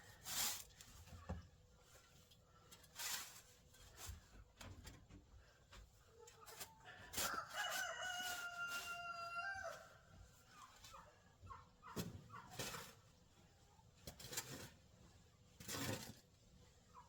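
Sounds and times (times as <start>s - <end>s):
rooster crowing: 7.2s - 10.0s.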